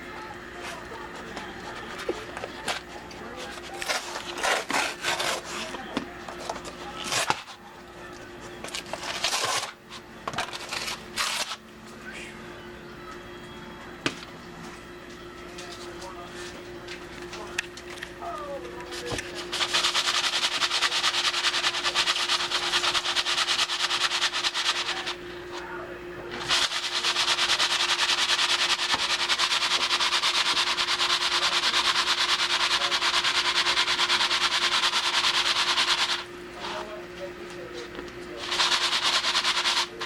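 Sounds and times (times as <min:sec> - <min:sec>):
popcorn pan rattling: 0:19.5 - 0:25.2, 0:26.4 - 0:36.3, 0:38.4 - 0:40.0.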